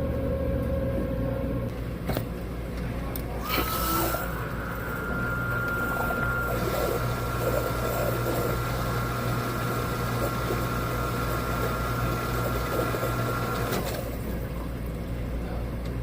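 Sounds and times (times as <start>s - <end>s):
electric motor humming and whining: 3.4s - 13.8s.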